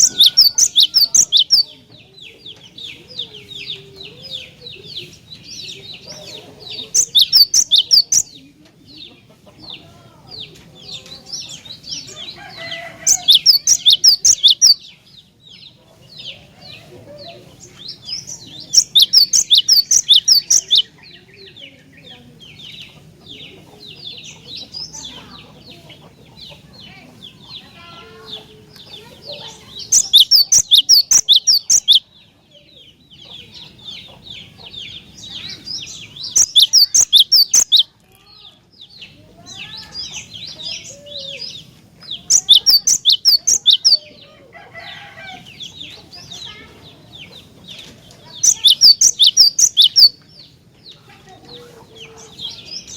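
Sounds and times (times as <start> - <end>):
bird song rapid high notes: 0.0 - 1.7, 6.9 - 8.4, 13.1 - 14.8, 18.1 - 20.9, 29.8 - 32.1, 35.4 - 37.8, 42.2 - 44.0, 48.3 - 50.2
faint bird chirping: 0.0 - 52.9.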